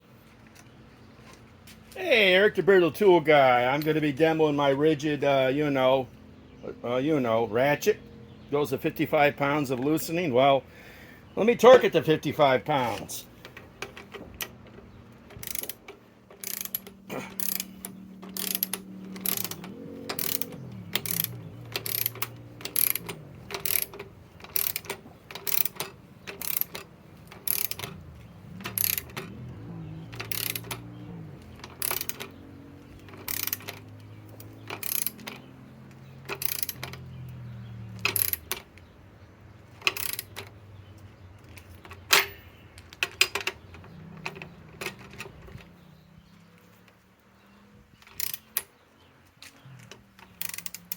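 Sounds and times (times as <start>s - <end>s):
sharp ratchet-like clicks: 15.2s - 37.1s, 37.9s - 38.7s, 39.7s - 40.5s, 48.0s - 48.7s, 50.2s - 50.9s
impact wrench motor whirring: 16.4s - 23.9s.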